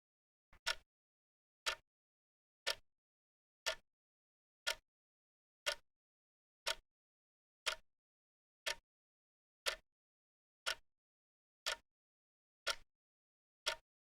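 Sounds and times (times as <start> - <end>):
clock ticks: 0.6 - 0.8, 1.6 - 1.8, 3.6 - 3.8, 6.6 - 6.8, 7.6 - 7.8, 8.6 - 8.8, 9.6 - 9.8, 11.6 - 11.8, 13.6 - 13.8.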